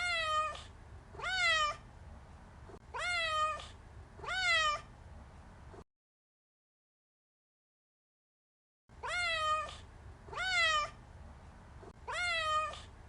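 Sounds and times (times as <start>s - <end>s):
cat meowing: 0.0s - 0.6s, 1.2s - 1.8s, 2.9s - 4.9s, 9.0s - 11.0s, 12.0s - 12.9s.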